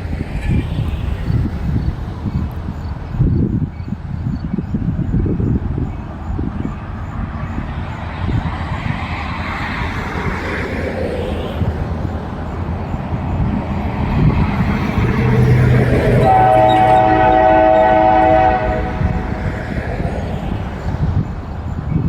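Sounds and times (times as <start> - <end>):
diesel locomotive engine rumbling: 0.0 - 22.0
locomotive horn blast: 14.6 - 20.1.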